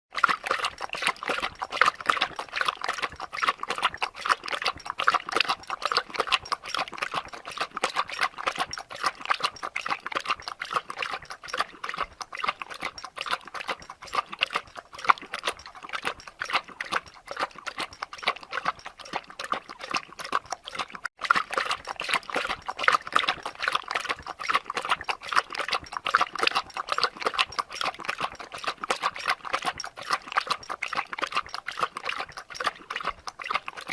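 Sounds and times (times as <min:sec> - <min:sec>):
dog lapping water: 0:00.1 - 0:33.9.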